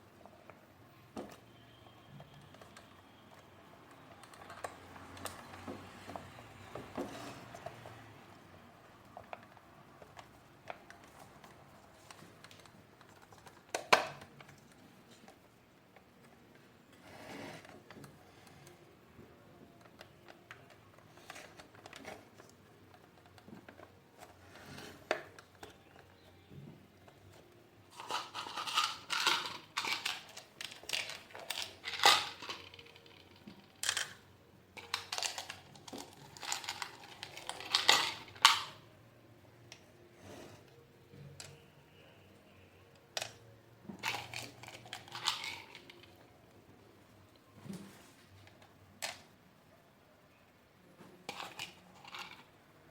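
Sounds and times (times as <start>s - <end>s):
plastic parts clicking and knocking: 0.4s - 8.4s, 9.0s - 17.0s, 17.6s - 38.8s, 43.1s - 46.3s, 47.6s - 49.4s
plastic clatter: 19.8s - 34.2s, 34.8s - 38.8s.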